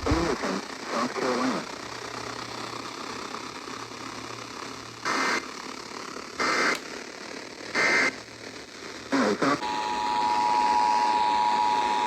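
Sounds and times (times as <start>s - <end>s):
low hum: 0.0s - 0.4s
radio hiss: 0.0s - 12.0s.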